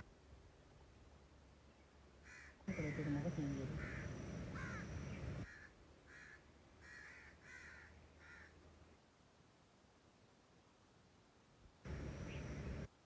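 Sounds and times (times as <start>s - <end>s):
crows cawing: 2.2s - 8.6s.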